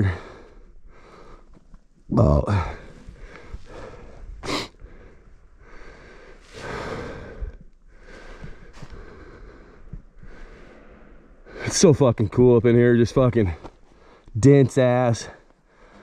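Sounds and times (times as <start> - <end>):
person breathing hard: 0.0 - 1.6, 2.5 - 11.7, 15.6 - 16.0.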